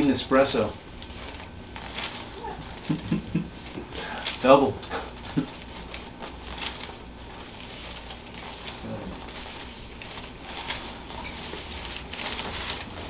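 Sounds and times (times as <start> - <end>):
low steady hum: 0.0 - 13.0
faint rustles: 0.7 - 13.0.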